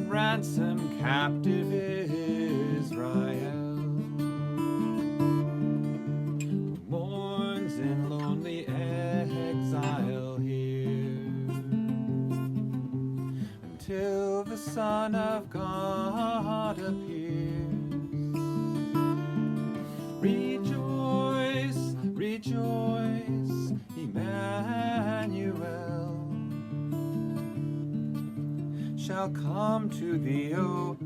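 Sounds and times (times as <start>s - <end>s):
person singing a hymn: 0.0s - 4.2s, 6.9s - 11.7s, 19.9s - 26.2s
strummed acoustic guitar: 0.0s - 31.0s.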